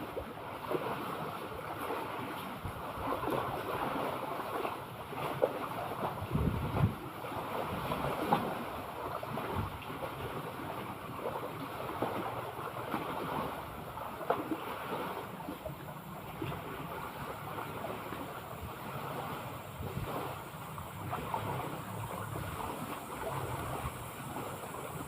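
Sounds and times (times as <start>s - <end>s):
sea water lapping and splashing: 0.0s - 25.0s
wind rumbling on microphone: 0.0s - 25.0s.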